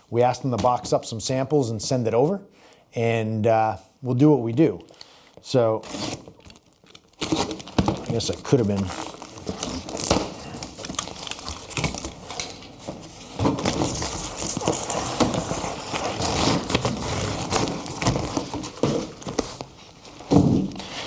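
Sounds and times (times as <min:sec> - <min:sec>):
packaging crackling and rustling: 0:05.8 - 0:21.0.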